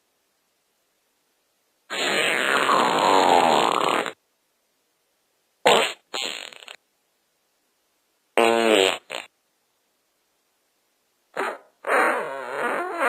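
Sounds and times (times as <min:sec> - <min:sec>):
fart sounds: 0:01.9 - 0:04.2, 0:05.6 - 0:06.8, 0:08.4 - 0:09.3, 0:11.3 - 0:13.0.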